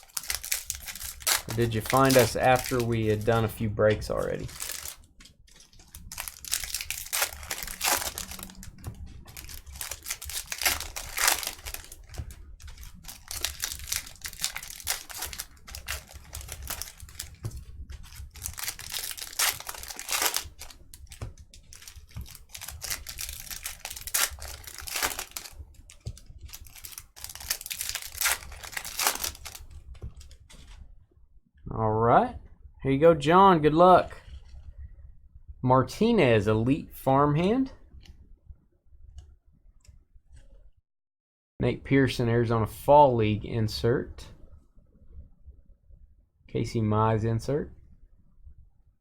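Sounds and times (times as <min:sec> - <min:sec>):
card packs crinkling and tearing: 0:00.0 - 0:29.7.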